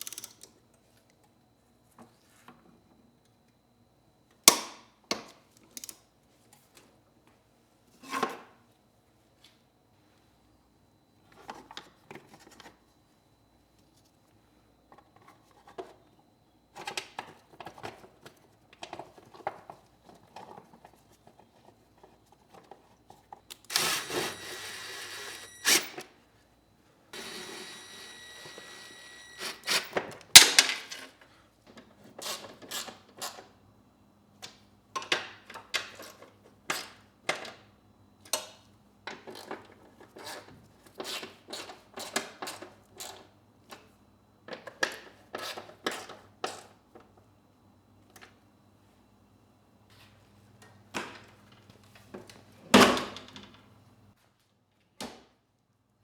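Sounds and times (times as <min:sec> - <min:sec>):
power tool whirring: 0:23.7 - 0:26.0, 0:27.2 - 0:29.9.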